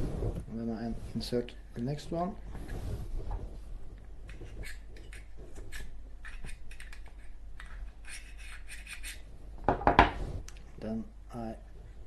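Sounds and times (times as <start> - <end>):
fingers scratching and rubbing: 4.3 - 9.3.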